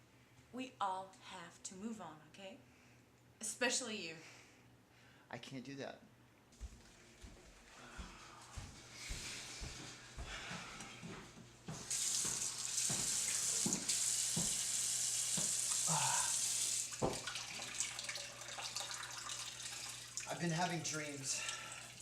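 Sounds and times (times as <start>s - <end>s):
water running from tap: 11.7s - 22.0s.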